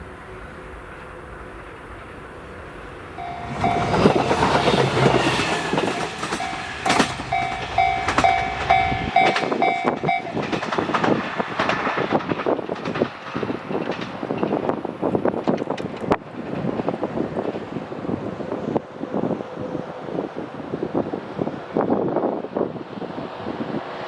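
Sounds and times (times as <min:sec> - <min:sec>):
railcar engine hum: 0:00.0 - 0:24.0
level crossing warning bell: 0:03.2 - 0:10.4
wheels clattering over rail joints: 0:03.2 - 0:19.0.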